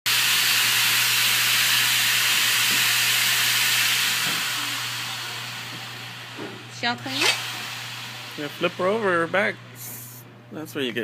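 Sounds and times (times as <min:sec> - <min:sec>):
air hissing from nozzle: 0:07.2 - 0:10.3.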